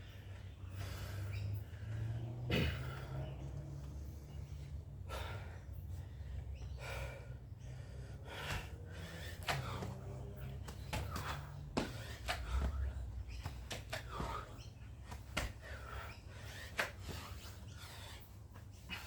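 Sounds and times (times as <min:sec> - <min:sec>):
person breathing hard: 0:00.0 - 0:19.0.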